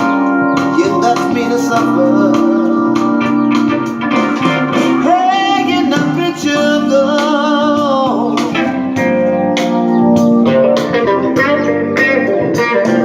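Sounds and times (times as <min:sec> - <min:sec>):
song with singing and guitar: 0:00.0 - 0:13.0.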